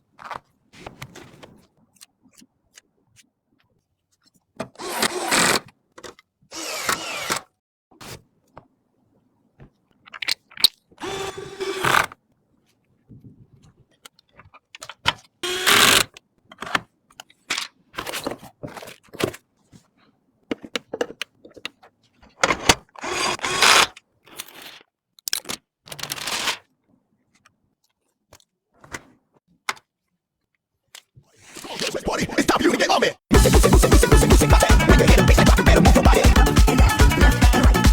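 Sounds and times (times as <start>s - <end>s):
clicks and taps of handling parts: 20.5s - 21.8s.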